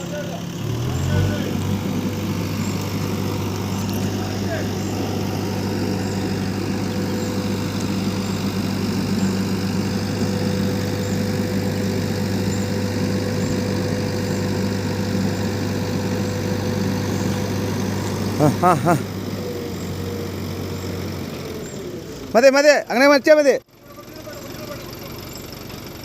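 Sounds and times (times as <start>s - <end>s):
diesel engine idling: 0.0s - 26.0s.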